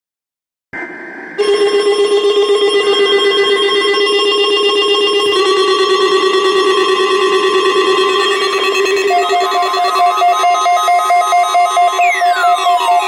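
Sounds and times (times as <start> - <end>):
high tone: 1.4 - 13.0
trilling electronic alarm tone: 1.4 - 13.0.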